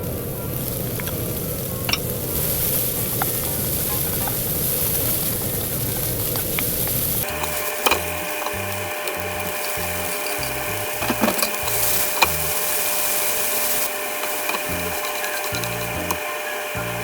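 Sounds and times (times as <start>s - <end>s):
food sizzling in a frying pan: 0.0s - 17.0s
utensil clicking against pan: 6.3s - 16.2s.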